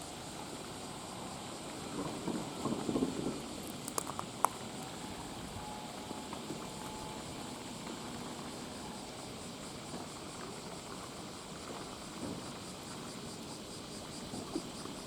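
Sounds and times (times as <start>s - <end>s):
sea: 0.0s - 15.0s
wind: 0.0s - 15.0s
faint thin tone: 4.7s - 9.0s.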